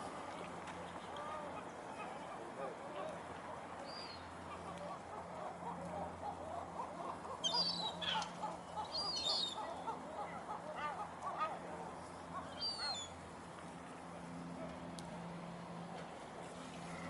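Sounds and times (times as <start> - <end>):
seagulls calling: 3.8 - 13.2.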